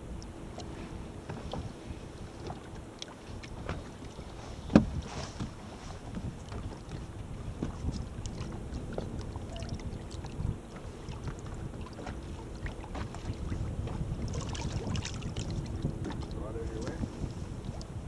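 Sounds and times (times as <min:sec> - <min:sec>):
water slapping boat hull: 0:00.0 - 0:18.0
wind buffeting microphone: 0:00.0 - 0:18.0
knocks on boat: 0:01.2 - 0:01.8, 0:04.6 - 0:09.1, 0:11.5 - 0:12.3.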